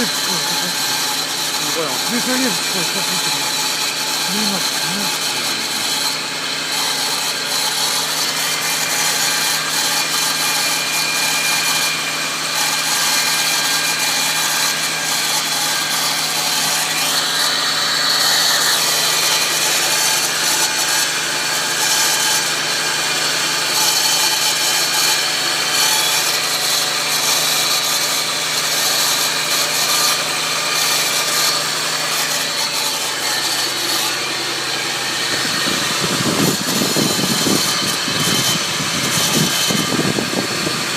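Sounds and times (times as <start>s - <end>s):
high whine under hood: 0.0s - 10.4s, 31.3s - 40.9s
harsh raspy grinding noise: 0.0s - 40.9s.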